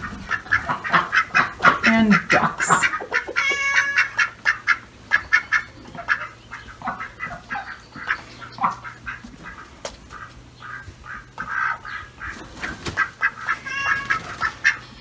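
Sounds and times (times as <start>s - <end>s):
ducks quacking: 0.0s - 15.0s
long bird call: 1.4s - 6.8s.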